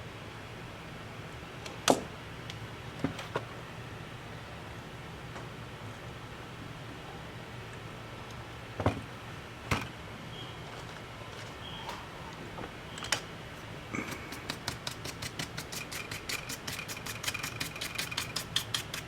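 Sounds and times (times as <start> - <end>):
faint high whine: 9.6 - 14.3
rapid even ticking: 14.0 - 19.0
small tools clicking: 14.0 - 19.0.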